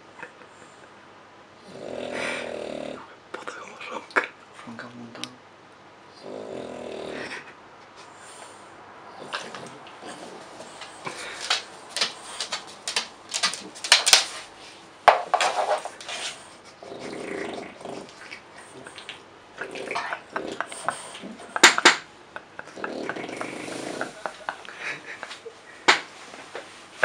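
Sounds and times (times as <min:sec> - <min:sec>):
man snoring loudly: 0:01.7 - 0:03.1, 0:06.2 - 0:07.3.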